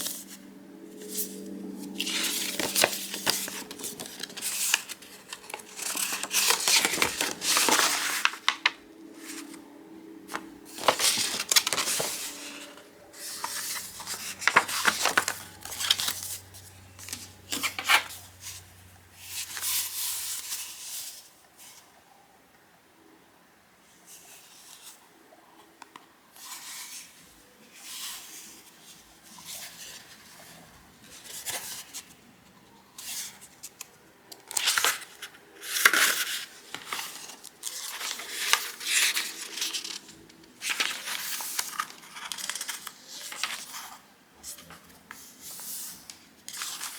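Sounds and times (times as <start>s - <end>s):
low hum: 0.0s - 19.4s.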